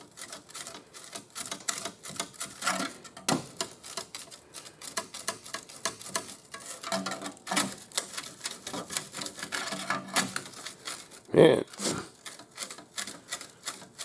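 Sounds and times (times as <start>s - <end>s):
metal tools clicking and tapping: 4.9s - 10.5s.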